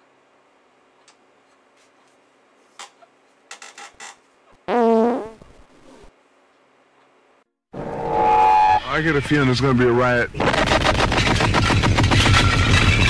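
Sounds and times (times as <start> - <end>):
fart: 4.6 - 6.1.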